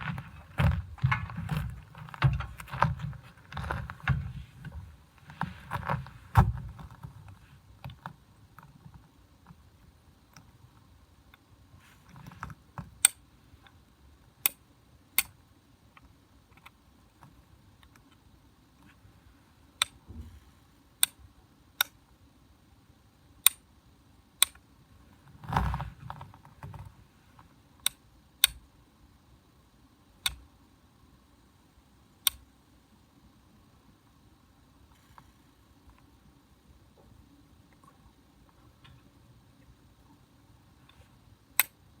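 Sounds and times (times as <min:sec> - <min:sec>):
handling rustles: 0:00.0 - 0:09.1, 0:25.1 - 0:27.5.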